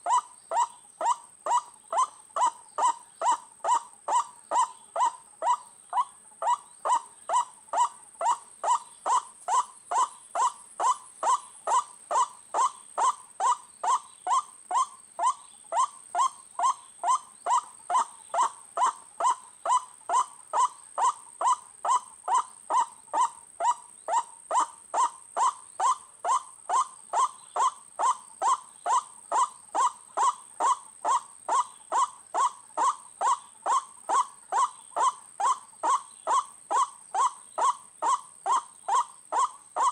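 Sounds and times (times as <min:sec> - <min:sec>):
waterhen calls: 0:00.1 - 0:39.9.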